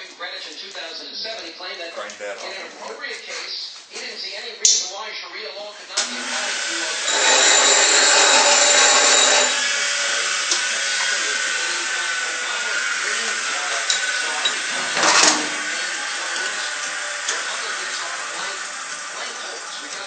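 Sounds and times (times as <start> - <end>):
metal lathe running: 6.0 - 20.0
high whine: 7.0 - 20.0.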